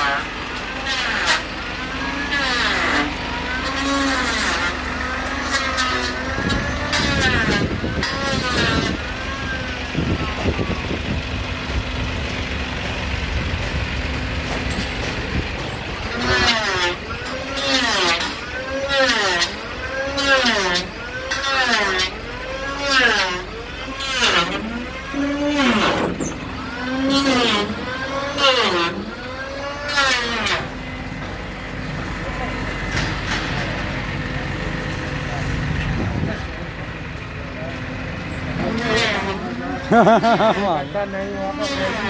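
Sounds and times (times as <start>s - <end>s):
truck engine running: 0.0s - 42.0s.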